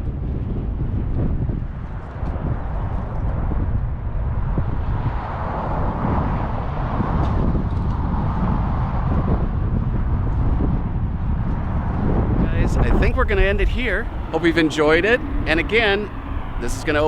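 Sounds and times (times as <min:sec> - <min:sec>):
wind rumbling on microphone: 0:00.0 - 0:17.0
car passing: 0:12.4 - 0:17.0.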